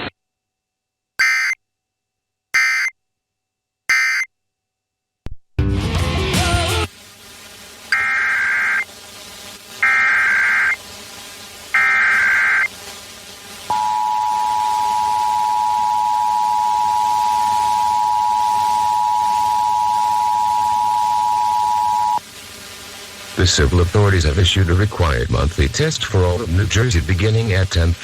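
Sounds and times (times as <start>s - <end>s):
shrill data tone bursts: 1.2s - 1.6s, 2.6s - 2.9s, 3.9s - 4.3s, 7.9s - 8.9s, 9.8s - 10.8s, 11.7s - 12.8s, 13.7s - 22.2s
two-tone attention signal: 1.2s - 1.6s, 2.6s - 2.9s, 3.9s - 4.3s, 11.8s - 12.7s, 13.7s - 22.2s.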